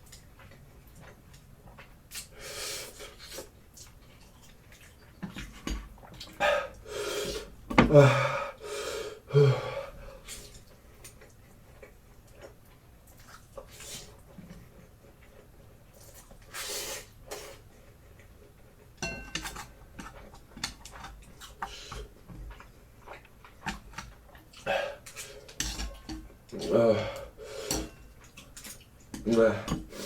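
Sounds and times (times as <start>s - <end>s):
chewing: 0.0s - 2.4s, 3.0s - 6.8s, 10.2s - 16.6s, 17.3s - 30.0s
heavy breathing: 6.4s - 10.3s, 26.6s - 27.9s.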